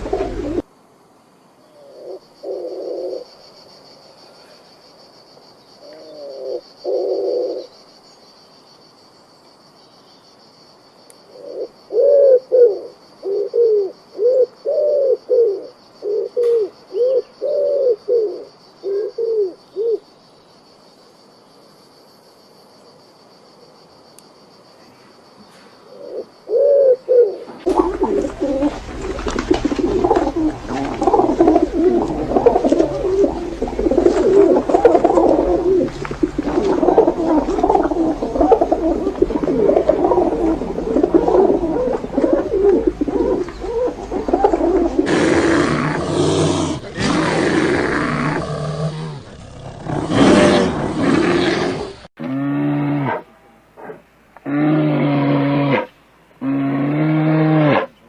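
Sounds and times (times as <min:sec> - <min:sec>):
pigeons cooing: 0:00.0 - 0:00.7, 0:01.8 - 0:03.3, 0:05.8 - 0:07.7, 0:11.3 - 0:20.0, 0:25.9 - 0:52.1.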